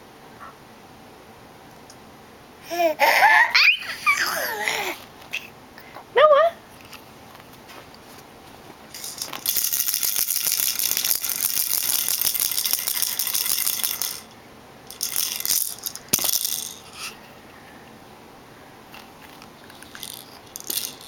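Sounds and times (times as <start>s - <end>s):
rattle shaken fast: 8.9s - 17.2s, 18.9s - 21.0s.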